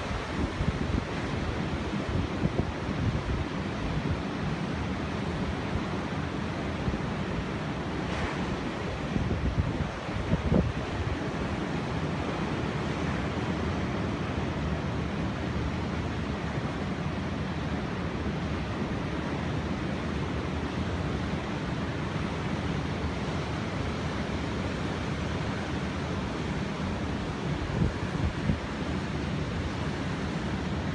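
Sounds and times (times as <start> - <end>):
wind on microphone: 0.0 - 4.3, 6.6 - 13.9, 27.0 - 30.9
waves breaking: 0.0 - 30.9.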